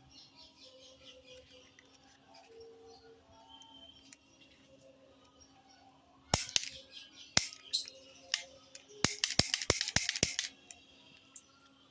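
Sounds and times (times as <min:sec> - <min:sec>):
toy cap gun cracks: 0:06.4 - 0:06.8, 0:07.4 - 0:10.8.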